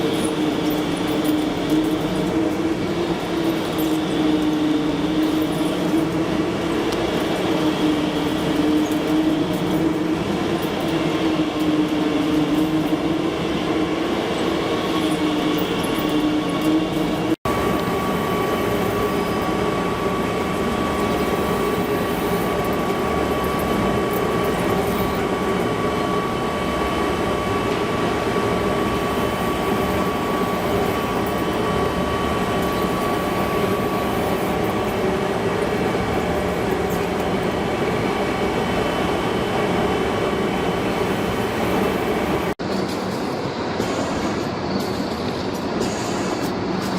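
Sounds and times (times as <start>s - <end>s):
thin high machine whine: 0.0s - 46.9s.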